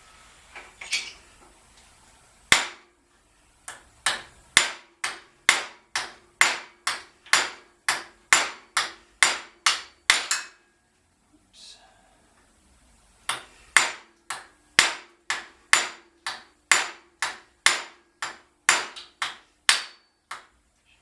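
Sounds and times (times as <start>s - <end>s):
hammer striking metal shaft: 3.7s - 10.6s, 13.3s - 20.5s.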